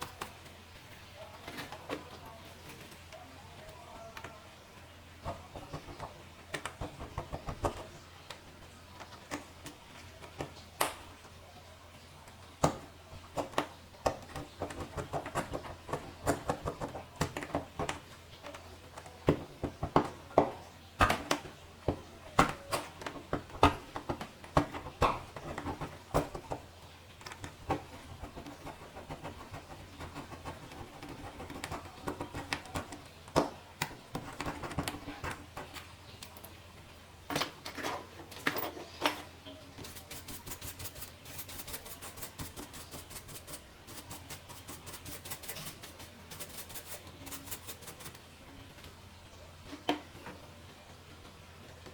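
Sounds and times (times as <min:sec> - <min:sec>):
tools tapping plastic parts: 0:05.2 - 0:08.4, 0:12.3 - 0:36.6, 0:37.2 - 0:43.0.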